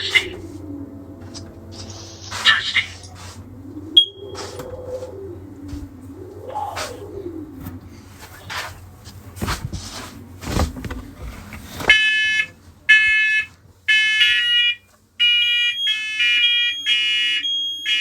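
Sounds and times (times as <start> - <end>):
smoke alarms beeping: 4.0 - 4.6, 11.9 - 18.0
knocks and rustles: 6.8 - 12.0.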